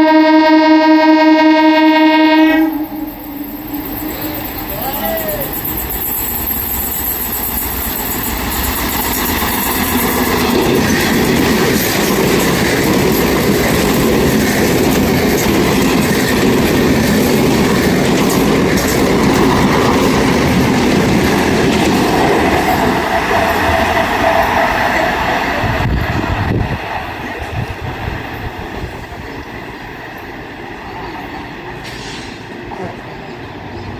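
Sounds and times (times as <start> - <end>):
train rumble: 1.6 - 33.9
wheels clattering over rail joints: 3.7 - 24.4.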